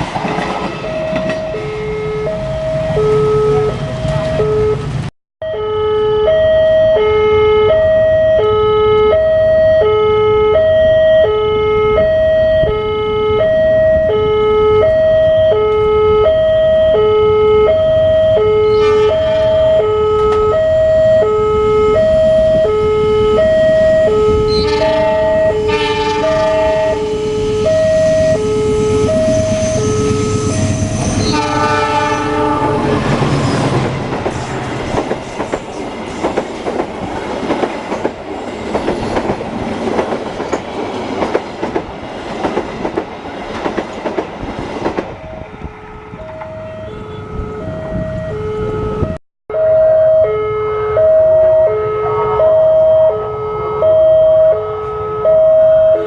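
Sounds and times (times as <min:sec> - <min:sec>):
two-tone crossing alarm: 0:00.4 - 0:33.8, 0:44.9 - 0:56.0
locomotive horn blowing: 0:17.0 - 0:20.6, 0:21.2 - 0:33.0, 0:46.1 - 0:56.0
train wheel clatter: 0:33.0 - 0:45.2.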